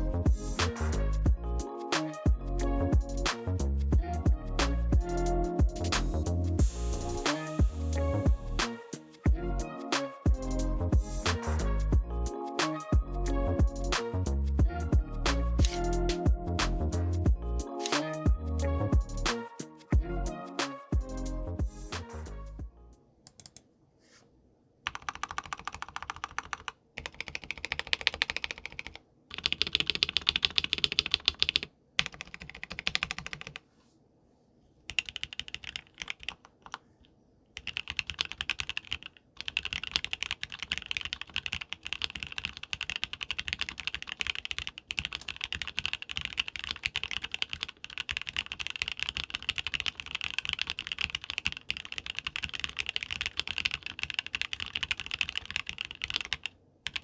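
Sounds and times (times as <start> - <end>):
typing on mechanical keyboard: 24.9 - 33.6, 34.9 - 36.8, 37.6 - 57.0.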